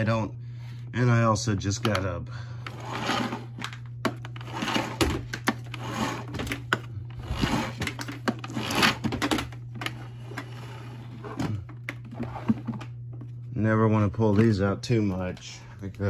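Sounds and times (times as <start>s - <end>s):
clicks and rattling handling noises: 3.5s - 10.5s.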